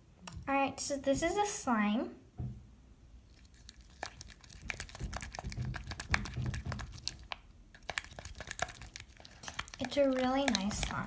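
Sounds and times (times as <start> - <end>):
slime squeezed with sticky clicks: 3.4 - 11.0.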